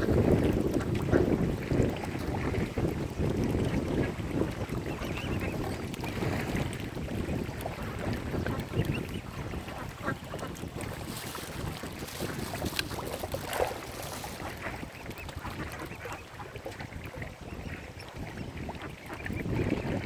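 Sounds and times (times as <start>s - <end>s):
wind buffeting microphone: 0.0s - 20.0s
waterfowl calls: 7.7s - 10.6s, 13.3s - 20.0s.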